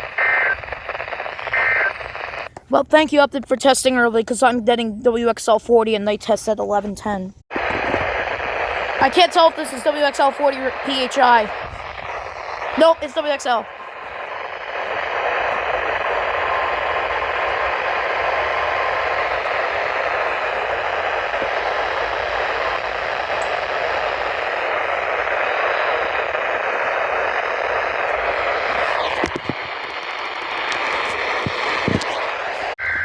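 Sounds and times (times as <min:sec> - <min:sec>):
radio static hiss: 0:00.0 - 0:02.5, 0:07.5 - 0:33.0
clicks: 0:14.0 - 0:20.2, 0:28.0 - 0:32.4.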